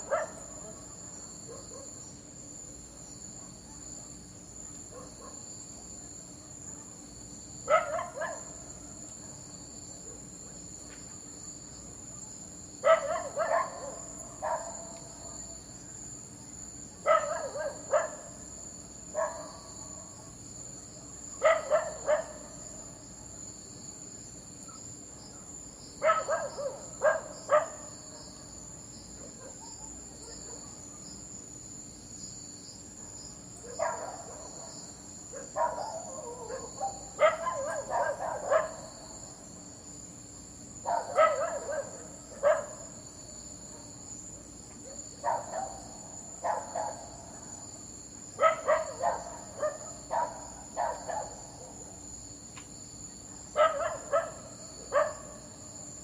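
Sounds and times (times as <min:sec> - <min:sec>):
dog barking: 0:00.0 - 0:02.0, 0:03.4 - 0:04.2, 0:04.9 - 0:05.5, 0:07.7 - 0:08.6, 0:12.8 - 0:15.4, 0:17.0 - 0:18.4, 0:19.1 - 0:19.6, 0:21.4 - 0:22.6, 0:26.0 - 0:27.9, 0:29.2 - 0:30.8, 0:33.0 - 0:39.0, 0:40.8 - 0:42.9, 0:44.8 - 0:47.6, 0:48.4 - 0:51.9, 0:53.5 - 0:55.5.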